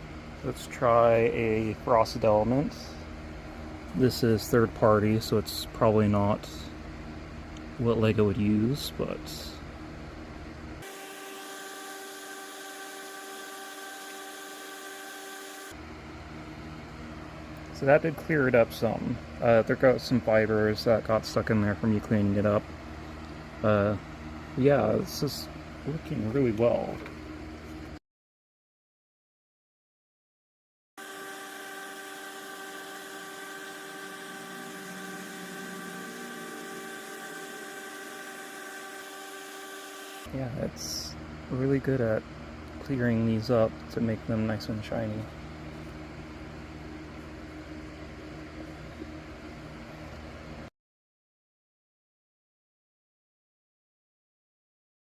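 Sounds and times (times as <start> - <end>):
small motor humming: 10.8 - 15.8, 31.0 - 40.3
vapor polisher whine: 10.8 - 15.8, 31.0 - 40.3
vapor polisher hissing: 31.0 - 40.3.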